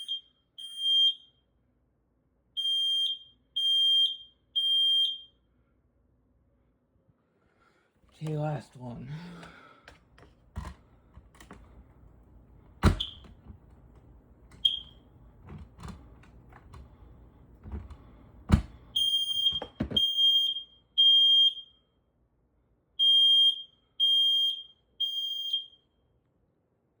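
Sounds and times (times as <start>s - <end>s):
smoke alarm beeping: 0.0s - 1.4s, 2.6s - 5.4s, 12.8s - 13.3s, 14.6s - 15.1s, 18.8s - 21.9s, 23.0s - 25.9s
smoke alarm chirps: 0.0s - 1.4s, 2.6s - 5.4s, 12.9s - 13.3s, 14.6s - 15.0s, 18.9s - 21.9s, 23.0s - 25.9s.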